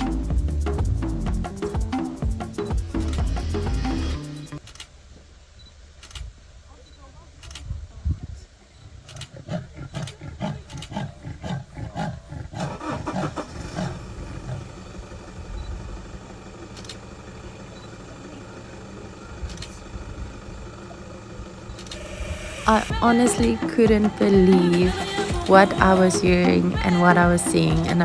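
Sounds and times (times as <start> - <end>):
car engine idling: 0.0 - 7.4, 12.6 - 28.0
leopard sawing call: 9.0 - 15.2, 21.8 - 28.0.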